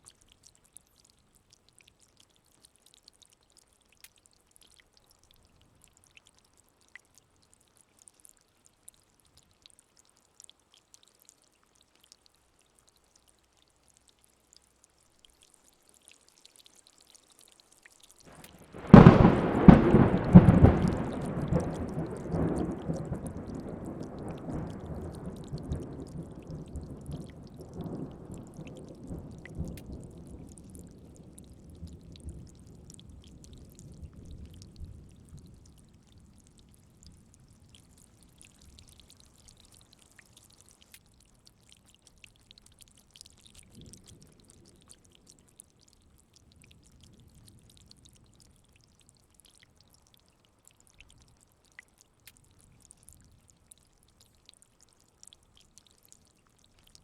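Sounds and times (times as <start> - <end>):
rain pattering: 0.0 - 57.0
distant thunder rumble: 18.6 - 30.7
thunder rolling: 18.7 - 27.3.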